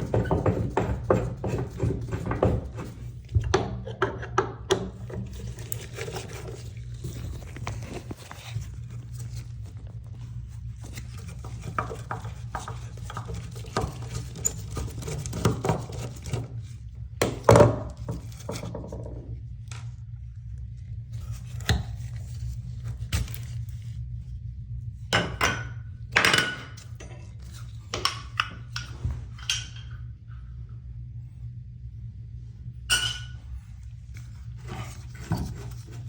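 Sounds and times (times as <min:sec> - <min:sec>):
steady low hum: 0:00.0 - 0:36.0
tools and metal fittings clinking: 0:32.9 - 0:33.4.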